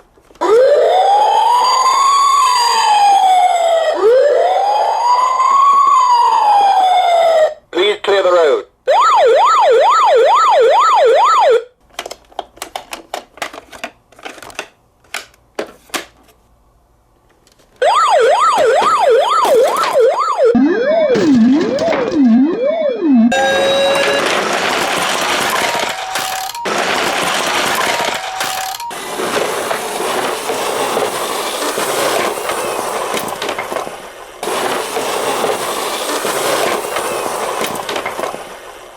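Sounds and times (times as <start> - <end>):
toy siren wailing: 0.4 - 7.6, 8.9 - 11.7, 17.8 - 24.4, 25.2 - 29.0
toy cars rattling along a track: 23.4 - 38.8.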